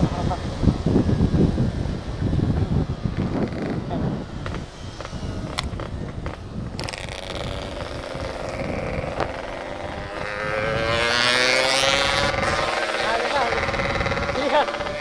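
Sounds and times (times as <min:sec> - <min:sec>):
two-stroke motorcycle engine revving: 0:00.0 - 0:15.0.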